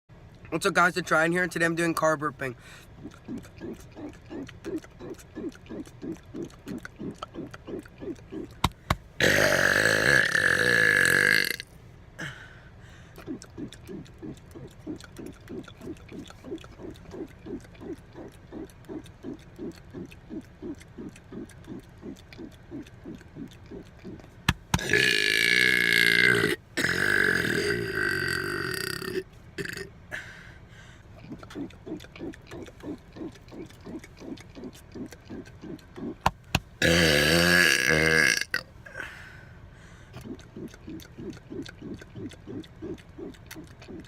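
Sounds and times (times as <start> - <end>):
faint rhythmic ticking: 0.1 - 44.0
man burping: 9.2 - 12.6, 24.0 - 30.3, 36.8 - 39.1.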